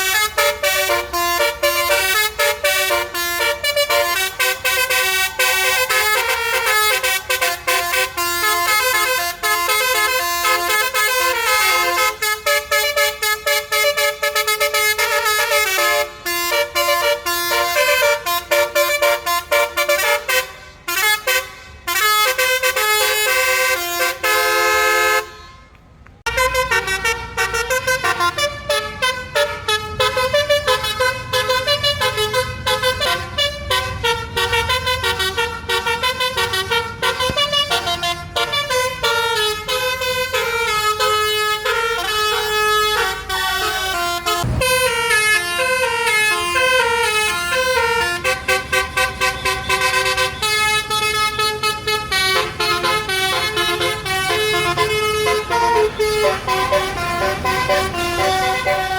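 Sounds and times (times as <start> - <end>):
multi-trumpet bus horn playing a tune: 0.0 - 58.9
low rumble: 44.4 - 45.2.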